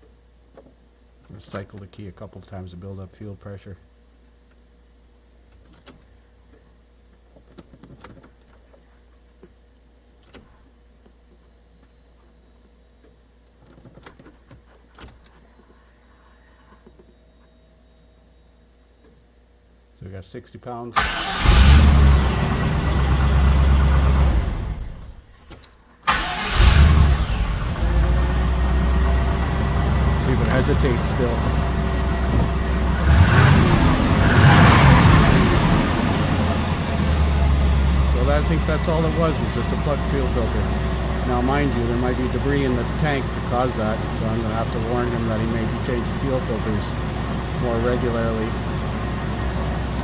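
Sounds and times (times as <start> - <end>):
truck engine starting and idling: 21.0 - 25.3, 26.1 - 50.0
steady low hum: 26.6 - 50.0.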